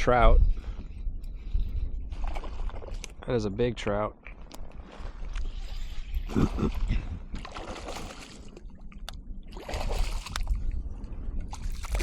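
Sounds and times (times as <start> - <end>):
low wind rumble: 0.0 - 12.0
water splashing and trickling: 2.1 - 3.3, 4.2 - 12.0.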